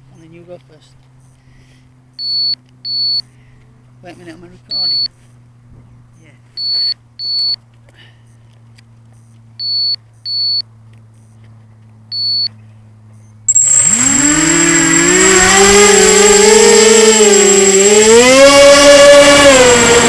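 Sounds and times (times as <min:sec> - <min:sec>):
quadcopter motors whining: 0:02.1 - 0:05.4, 0:06.1 - 0:07.6, 0:13.1 - 0:20.0
short high electronic beeps: 0:02.2 - 0:03.2, 0:04.7 - 0:05.1, 0:06.6 - 0:07.6, 0:09.6 - 0:10.6, 0:12.1 - 0:12.5, 0:13.5 - 0:16.3.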